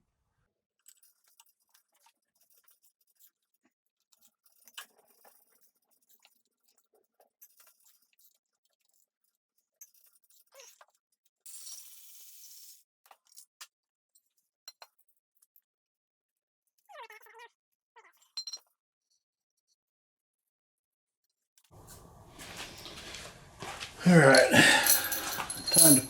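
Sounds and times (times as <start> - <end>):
clicks and clinks of hand tools: 21.8 - 26.0.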